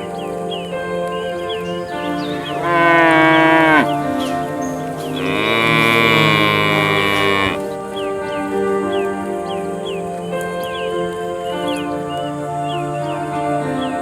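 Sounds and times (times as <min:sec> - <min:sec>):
cow mooing: 0:02.3 - 0:07.8.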